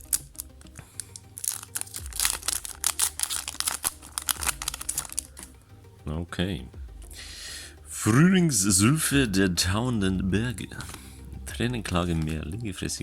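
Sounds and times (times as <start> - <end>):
foil pack crinkling and tearing: 0.0 - 5.6
quiet background music: 0.0 - 13.0.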